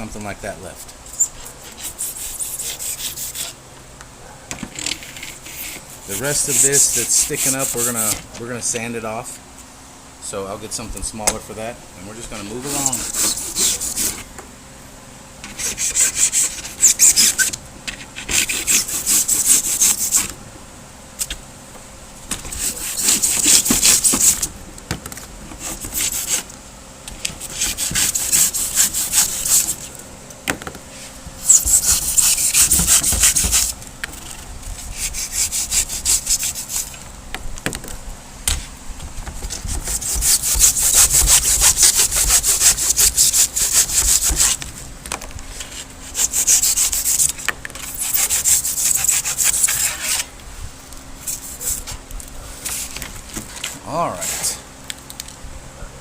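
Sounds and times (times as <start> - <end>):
hacksaw cutting: 5.5 - 8.2, 12.6 - 14.2, 15.6 - 17.5, 18.2 - 20.3, 22.5 - 24.4, 27.4 - 29.9, 31.4 - 33.7, 34.9 - 37.0, 39.6 - 44.6, 46.1 - 50.3.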